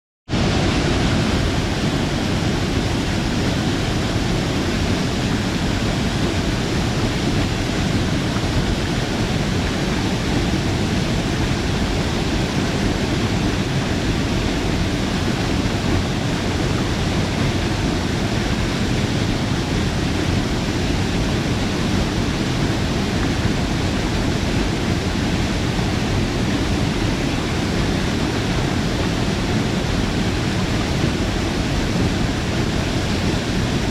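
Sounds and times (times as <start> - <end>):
waterfall rushing: 0.3 - 33.9.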